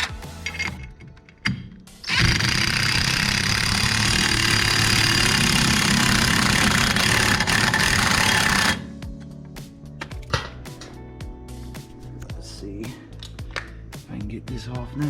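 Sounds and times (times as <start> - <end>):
power tool running: 2.0 - 8.9.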